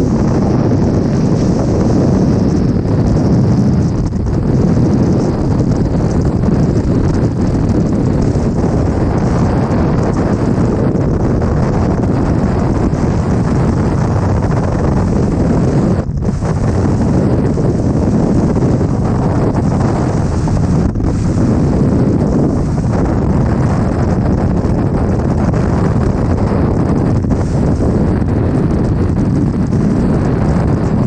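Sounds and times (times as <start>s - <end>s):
wind buffeting microphone: 0.0s - 31.0s.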